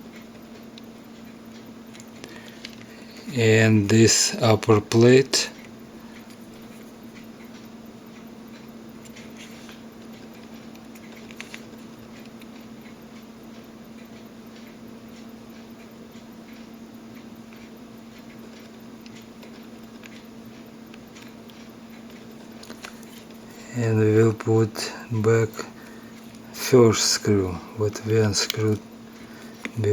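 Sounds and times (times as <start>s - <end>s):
low electrical hum: 0.0s - 29.9s
small tool ticks and clicks: 8.6s - 23.4s.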